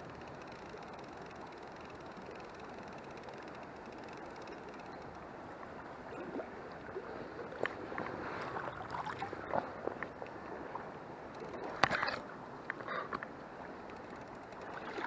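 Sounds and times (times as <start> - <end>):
small river flowing: 0.0 - 15.0
water splashing and gurgling: 0.0 - 15.0.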